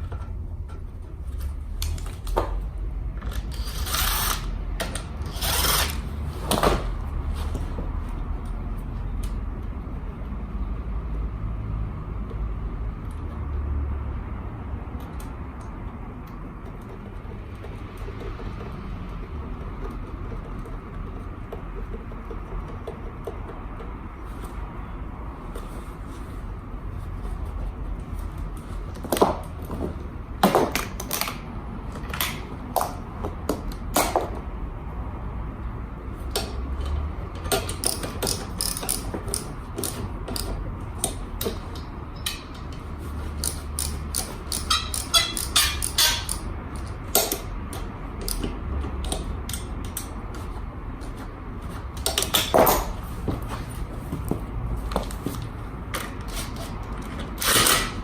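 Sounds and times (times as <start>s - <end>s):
hand tools clicking and clanking: 3.2s - 7.6s, 36.3s - 58.0s
metal parts knocking: 43.4s - 47.5s.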